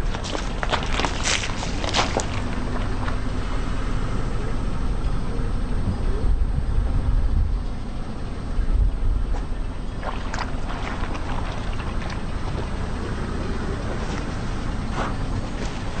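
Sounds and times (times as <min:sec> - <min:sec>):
objects crunching under tyre: 0:00.0 - 0:05.0, 0:09.3 - 0:16.0
car rolling with low rumble: 0:00.0 - 0:16.0.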